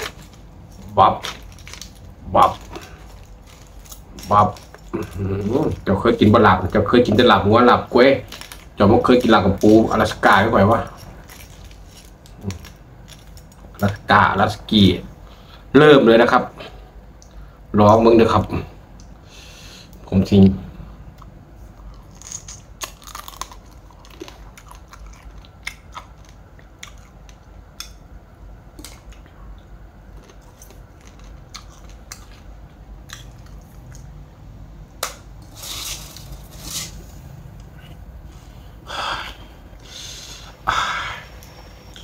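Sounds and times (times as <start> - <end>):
person chewing and crunching: 0.0 - 7.3, 8.2 - 14.1, 21.2 - 28.0, 28.8 - 34.2.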